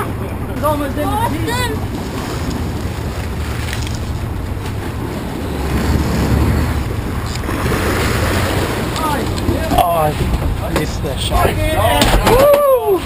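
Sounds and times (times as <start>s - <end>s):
boat engines running: 0.0s - 13.0s
water washing past hull: 0.0s - 13.0s.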